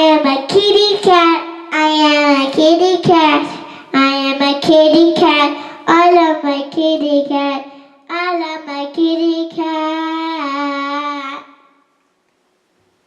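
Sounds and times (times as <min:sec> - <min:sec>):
child singing: 0:00.0 - 0:11.6.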